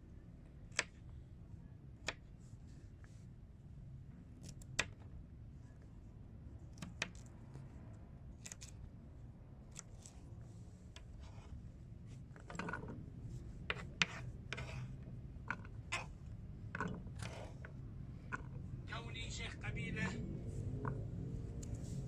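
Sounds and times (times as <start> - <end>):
blade scraping: 13.7 - 15.0.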